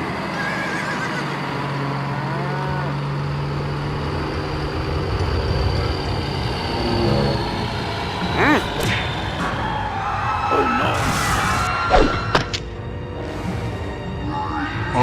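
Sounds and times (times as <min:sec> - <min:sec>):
continuous rumbling noise: 0:01.2 - 0:10.5
cow mooing: 0:02.0 - 0:03.1.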